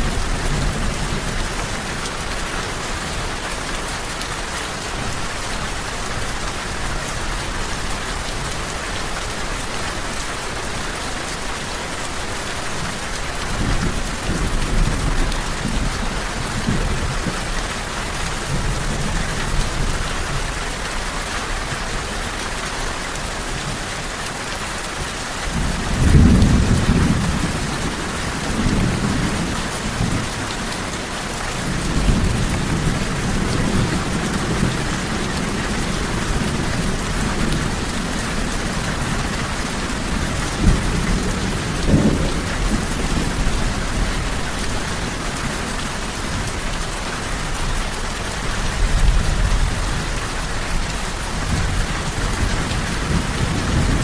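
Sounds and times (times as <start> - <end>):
steady rain hissing: 0.0 - 54.0
thunder rumbling: 31.5 - 45.4, 48.8 - 54.0.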